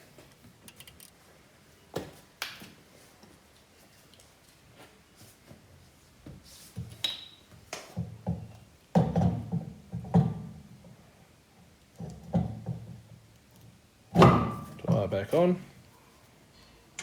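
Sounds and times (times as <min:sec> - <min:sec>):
heavy metal clunks: 0:14.2 - 0:15.1.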